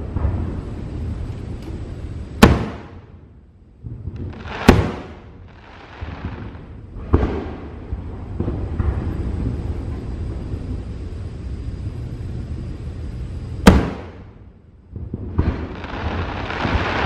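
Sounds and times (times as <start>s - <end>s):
fireworks booming: 0.0s - 17.0s.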